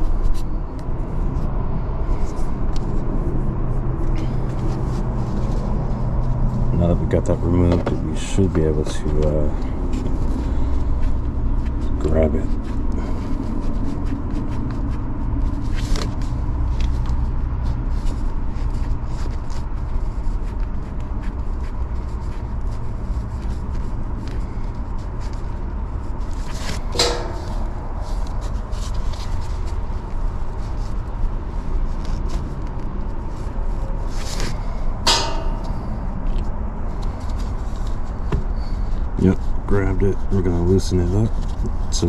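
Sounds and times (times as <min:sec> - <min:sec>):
metallic clinks: 0:35.1 - 0:36.2.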